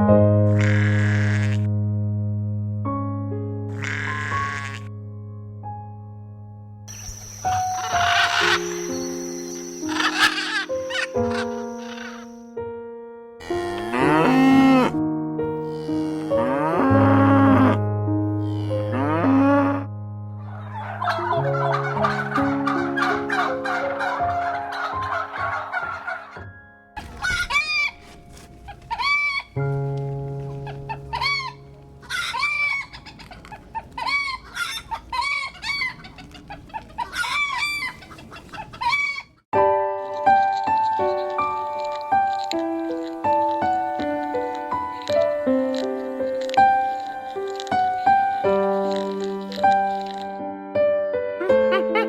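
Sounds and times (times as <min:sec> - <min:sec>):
background music with sustained chords: 0:00.0 - 0:33.0, 0:39.6 - 0:52.0
chickens squawking: 0:00.5 - 0:01.7, 0:03.7 - 0:04.9, 0:06.9 - 0:12.5, 0:20.4 - 0:26.4, 0:27.0 - 0:29.6, 0:30.4 - 0:50.4
cow mooing: 0:00.5 - 0:01.7, 0:03.7 - 0:04.9, 0:13.4 - 0:15.0, 0:15.6 - 0:17.8, 0:18.4 - 0:19.9, 0:40.1 - 0:50.4.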